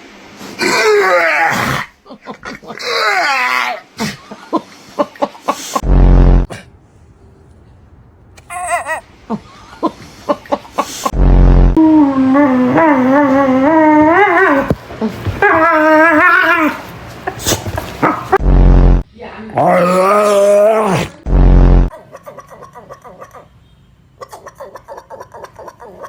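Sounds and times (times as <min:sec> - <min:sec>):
loud short deep sounds: 0:05.8 - 0:06.7, 0:11.1 - 0:12.0, 0:18.4 - 0:19.0, 0:21.2 - 0:21.9
dog howling: 0:11.8 - 0:14.8, 0:15.4 - 0:16.9.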